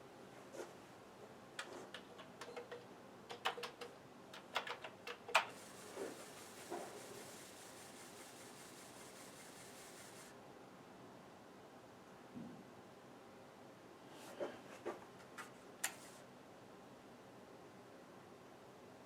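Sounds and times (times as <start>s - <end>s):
faint steady hiss: 0.0s - 14.5s, 15.1s - 19.0s
sharp clicks and clacks: 1.6s - 10.3s.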